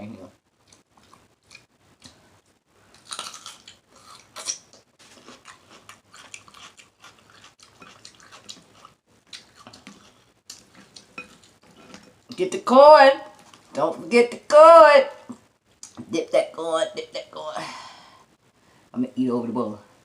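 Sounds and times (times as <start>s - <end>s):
person chewing food: 0.6s - 12.3s
crunching: 2.9s - 12.2s.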